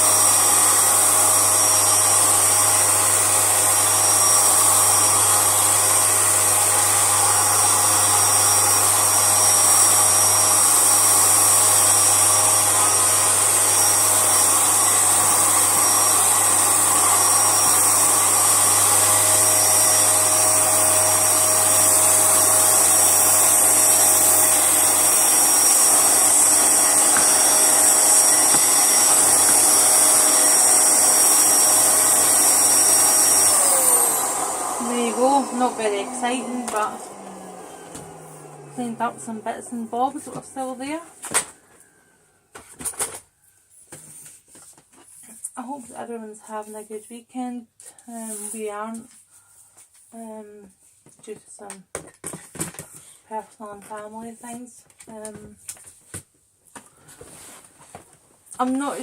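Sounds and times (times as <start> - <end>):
vacuum cleaner running: 0.0 - 42.0, 58.6 - 59.0.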